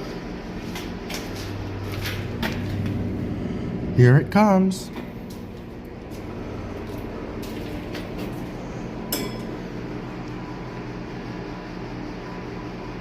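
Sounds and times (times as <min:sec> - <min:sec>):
elevator machinery hum: 0:00.0 - 0:13.0
elevator ding: 0:09.1 - 0:09.8.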